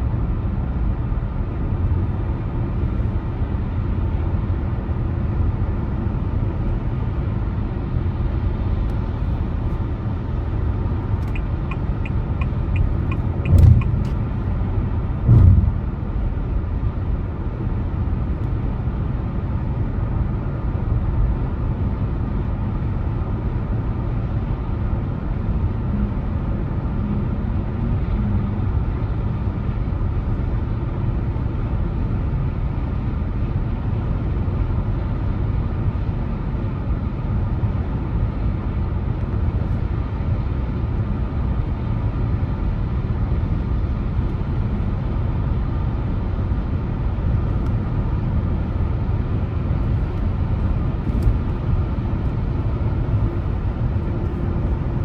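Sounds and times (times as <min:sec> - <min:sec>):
tyres and engine rumble: 0:00.1 - 0:55.0
heavy thumps: 0:13.3 - 0:14.4, 0:15.3 - 0:16.0.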